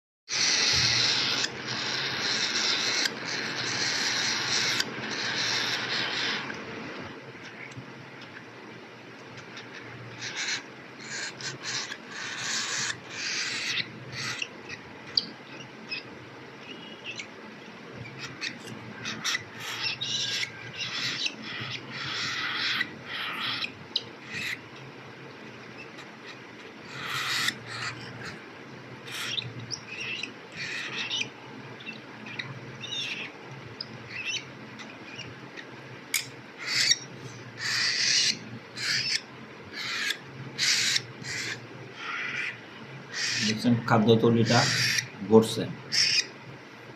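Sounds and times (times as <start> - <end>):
baby bird raspy begging calls: 0.3 - 6.5, 9.6 - 17.3, 18.1 - 24.6, 26.2 - 28.4, 29.1 - 33.4, 36.2 - 43.7, 44.4 - 45.2, 45.9 - 46.3
steady low hum: 0.3 - 46.9.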